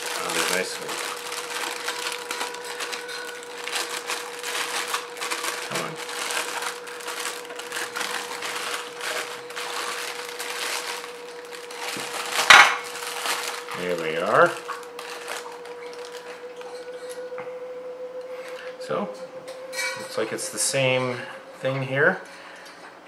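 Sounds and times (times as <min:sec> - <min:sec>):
plastic packaging crinkling: 0:00.0 - 0:17.4
faint steady hum: 0:00.0 - 0:23.0.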